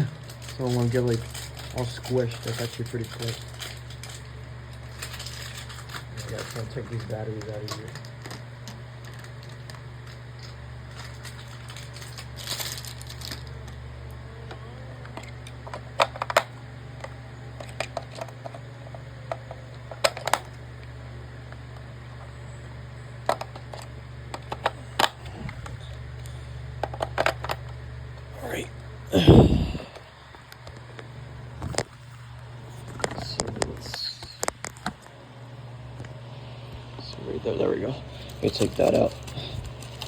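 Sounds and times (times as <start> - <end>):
batteries clicking and clinking: 0.0 - 13.8
steady low hum: 0.0 - 40.0.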